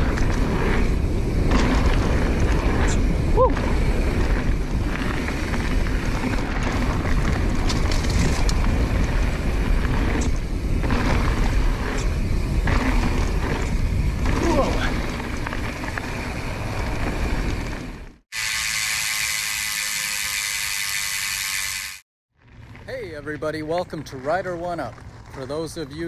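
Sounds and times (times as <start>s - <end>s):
wind rushing over microphone: 0.0s - 18.1s.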